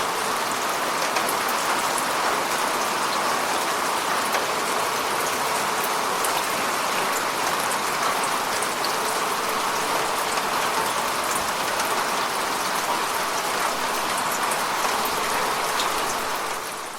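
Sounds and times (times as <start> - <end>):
steady falling rain: 0.0 - 16.9.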